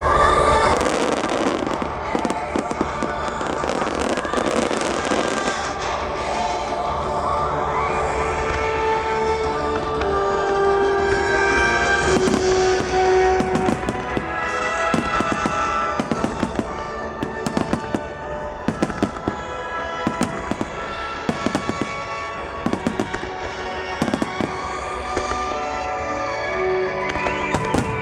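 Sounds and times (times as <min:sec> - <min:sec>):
music playing: 0:00.2 - 0:28.0
fireworks bursting: 0:00.4 - 0:06.1, 0:11.0 - 0:26.1, 0:27.0 - 0:28.0.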